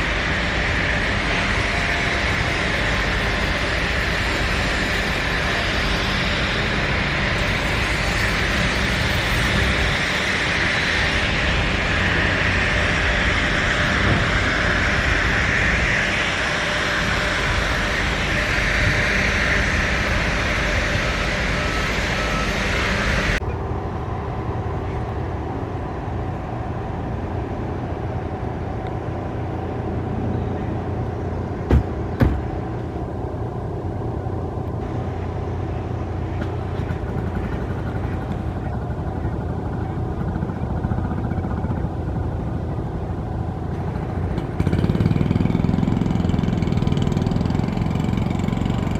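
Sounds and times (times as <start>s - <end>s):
loud low hum: 0.0s - 48.9s
low engine rumble: 0.0s - 48.9s
sharp knocks: 31.7s - 32.5s.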